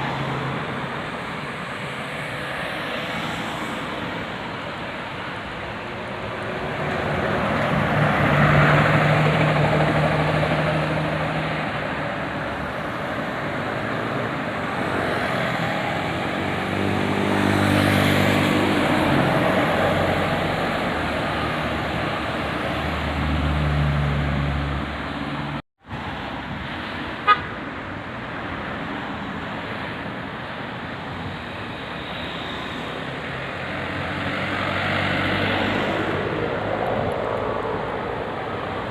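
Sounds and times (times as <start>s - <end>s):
passing road traffic: 0.0s - 38.9s
bus air horn toots: 27.2s - 27.5s.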